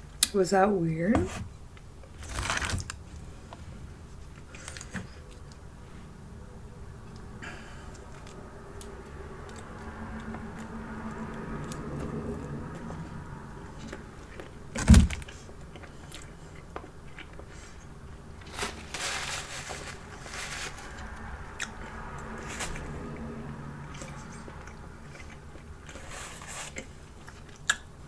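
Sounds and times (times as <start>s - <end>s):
crisp crunching: 2.2s - 3.0s, 18.4s - 21.8s.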